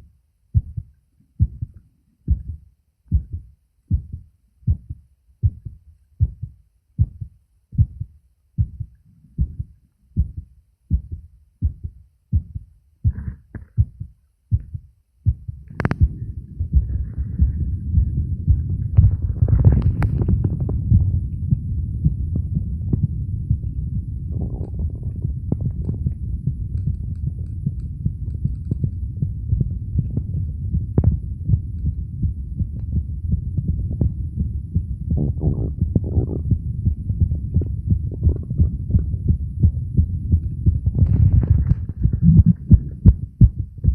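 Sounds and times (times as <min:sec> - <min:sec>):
heartbeat: 0:00.0 - 0:43.9
steady low hum: 0:00.0 - 0:43.9
low rubbing rumble: 0:13.0 - 0:43.9.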